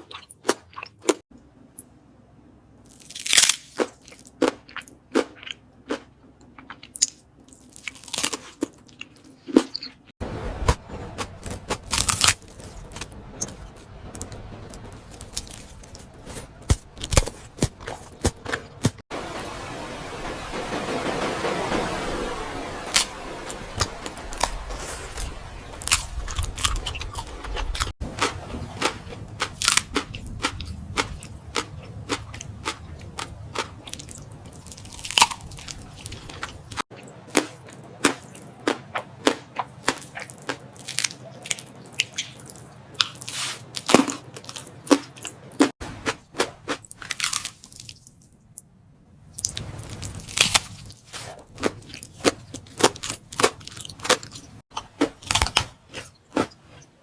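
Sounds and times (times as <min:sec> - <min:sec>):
chewing and mouth smacking: 0:00.0 - 0:01.2.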